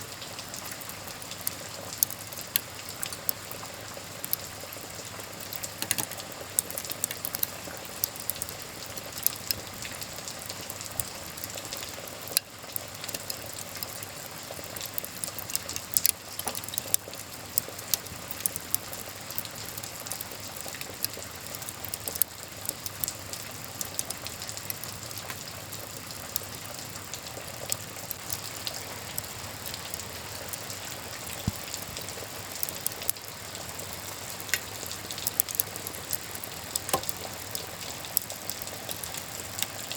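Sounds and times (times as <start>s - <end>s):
wood fire crackling and popping: 0.1s - 39.9s
rain hissing: 24.7s - 39.9s.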